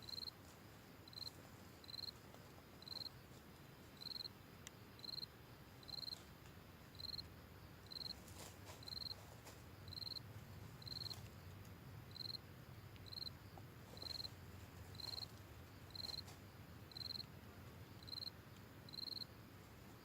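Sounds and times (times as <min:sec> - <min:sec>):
insect chirping: 0:00.0 - 0:20.0.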